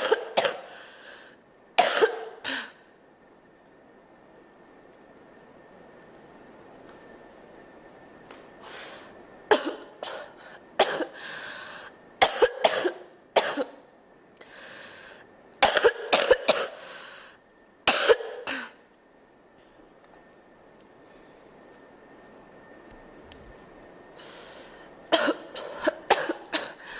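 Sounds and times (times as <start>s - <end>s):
girl coughing: 0.0s - 0.7s, 1.8s - 2.8s, 9.5s - 11.2s, 12.2s - 13.8s, 15.6s - 16.8s, 17.9s - 18.8s, 25.1s - 26.8s.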